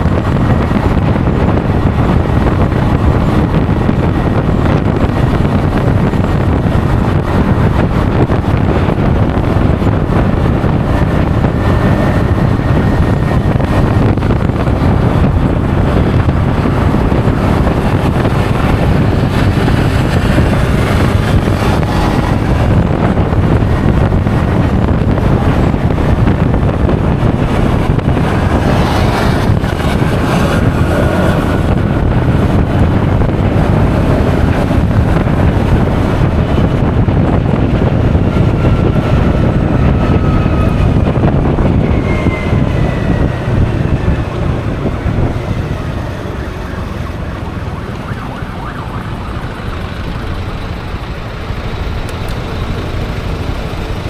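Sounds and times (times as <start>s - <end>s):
road noise: 0.0s - 54.0s
scooter engine: 0.0s - 54.0s
wind buffeting microphone: 0.0s - 54.0s.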